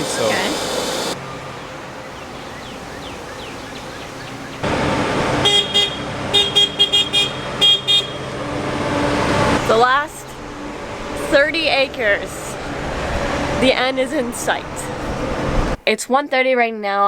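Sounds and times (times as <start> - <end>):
engine and road noise: 0.0 - 15.8
vehicle horn honking: 5.3 - 8.4.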